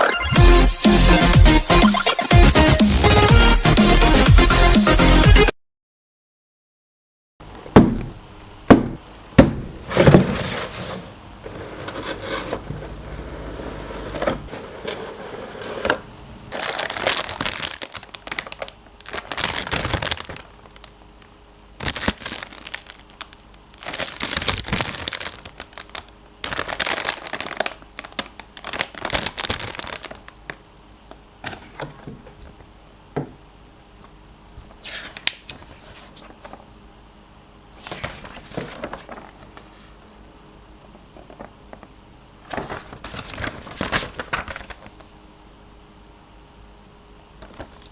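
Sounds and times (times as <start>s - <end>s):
packaging crinkling: 15.8s - 30.6s, 37.8s - 39.7s, 41.2s - 45.1s, 47.4s - 47.9s.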